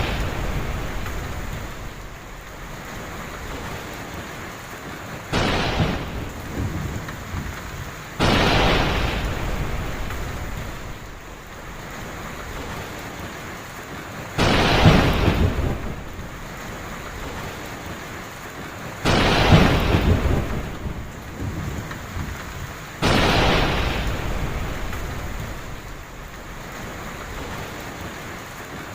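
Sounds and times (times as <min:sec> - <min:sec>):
rumbling thunderclaps: 0:00.0 - 0:04.2, 0:05.2 - 0:13.2, 0:14.4 - 0:18.0, 0:19.0 - 0:28.2
heavy rain falling: 0:00.0 - 0:28.9.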